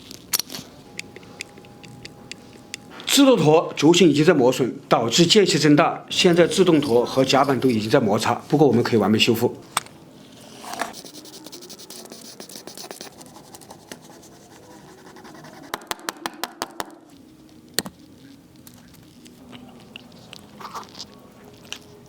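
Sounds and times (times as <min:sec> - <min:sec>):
light scraping of tools: 0:06.2 - 0:09.0.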